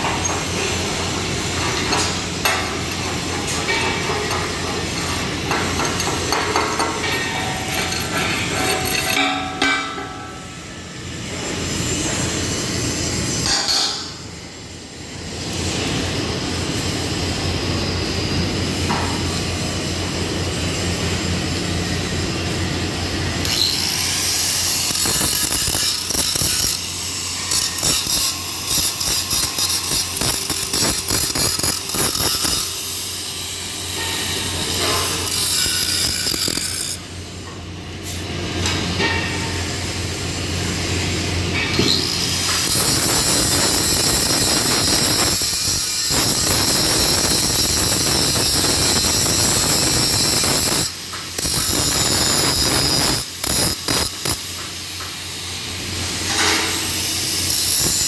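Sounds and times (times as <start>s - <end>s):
welding crackling: 23.5s - 37.0s, 41.9s - 58.0s.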